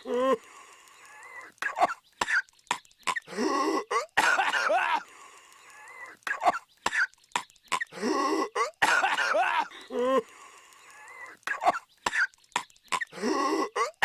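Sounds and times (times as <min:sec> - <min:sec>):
strained wheeze: 0:00.0 - 0:14.0
cartoon character coughing: 0:03.1 - 0:05.0, 0:07.7 - 0:09.7, 0:12.9 - 0:14.0.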